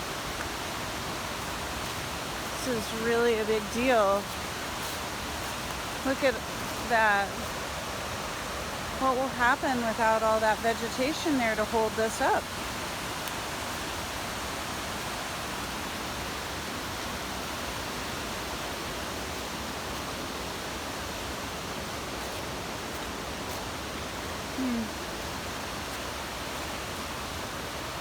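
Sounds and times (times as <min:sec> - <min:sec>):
creek water rushing: 0:00.0 - 0:28.0
person's falling vocal sound: 0:24.6 - 0:25.0.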